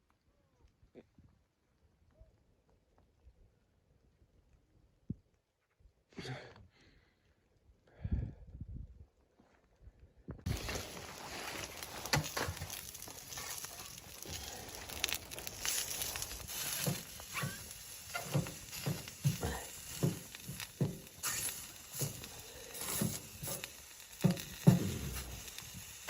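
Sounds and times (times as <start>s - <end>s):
rustling: 10.5s - 26.0s.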